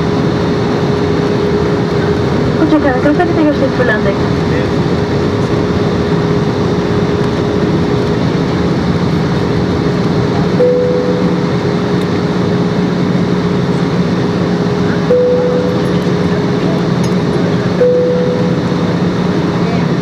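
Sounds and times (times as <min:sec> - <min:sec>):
jet airliner cabin noise: 0:00.0 - 0:20.0
short higher tone: 0:10.6 - 0:12.0, 0:15.1 - 0:16.6, 0:17.8 - 0:19.3.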